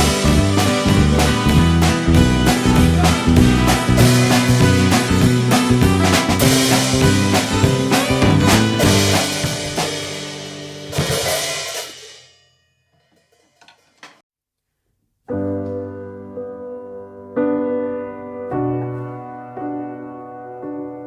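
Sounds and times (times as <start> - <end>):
song with drum kit and cymbals: 0.0 - 12.4.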